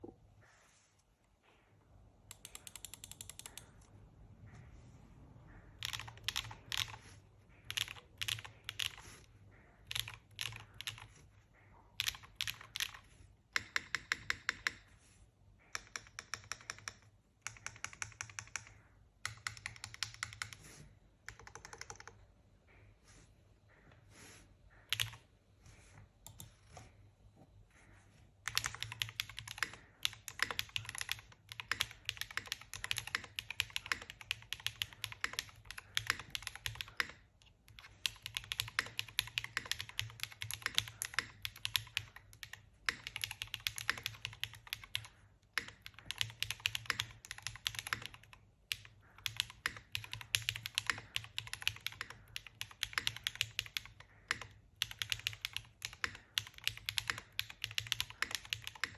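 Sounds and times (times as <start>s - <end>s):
mechanical keyboard typing: 2.3s - 3.9s, 5.8s - 11.2s, 12.0s - 14.9s, 15.7s - 20.6s, 21.3s - 22.2s, 24.9s - 25.2s, 28.4s - 58.9s.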